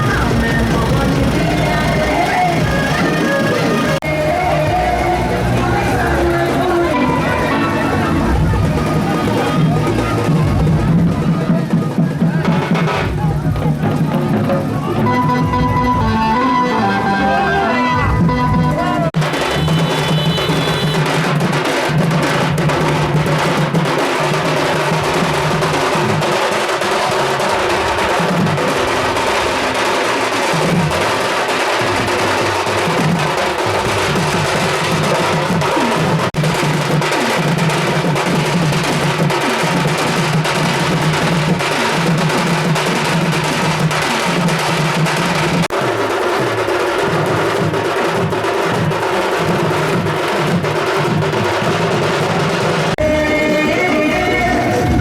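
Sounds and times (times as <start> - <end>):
gliding melodic line: 0.0 - 10.3, 15.0 - 19.1
fast dense drumming: 0.0 - 16.4, 18.1 - 55.0.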